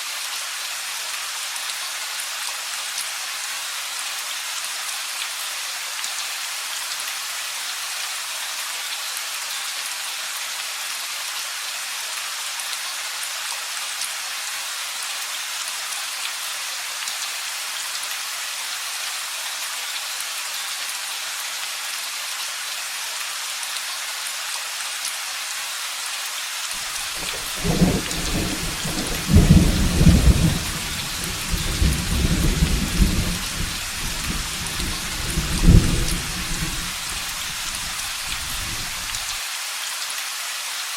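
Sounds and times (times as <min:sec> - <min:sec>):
rain hissing: 0:26.8 - 0:39.5
thunder rumbling: 0:27.0 - 0:39.3.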